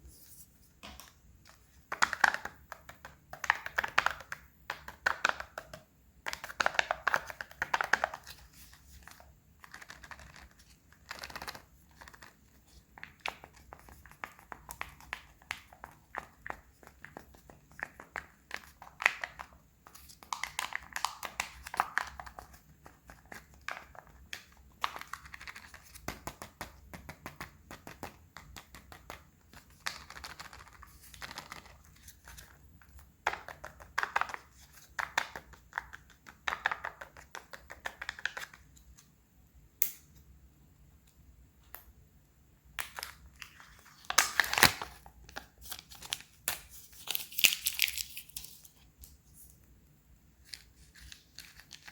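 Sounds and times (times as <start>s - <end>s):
wrappers crinkling and tearing: 46.8s - 48.7s.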